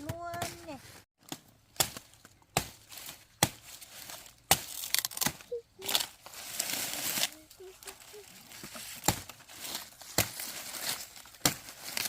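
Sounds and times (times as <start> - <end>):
sack rustling and crinkling: 5.8 - 12.0.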